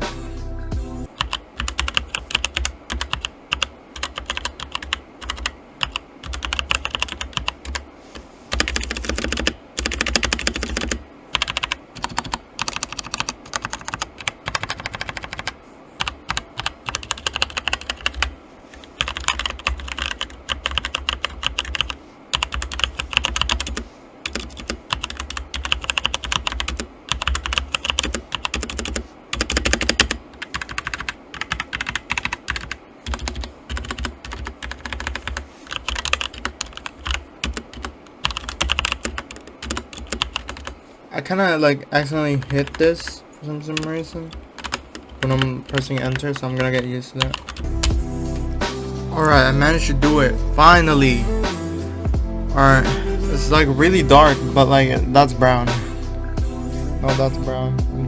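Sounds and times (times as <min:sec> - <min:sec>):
fast typing on mechanical keyboard: 0:01.2 - 0:07.9, 0:08.5 - 0:40.8, 0:42.4 - 0:43.1, 0:43.8 - 0:48.0.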